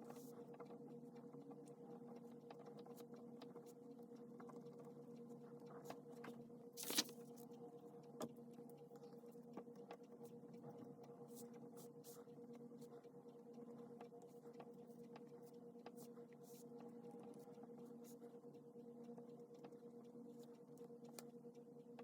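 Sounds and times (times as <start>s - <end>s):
low electrical hum: 0.0s - 22.0s
paper rustle: 6.8s - 7.3s.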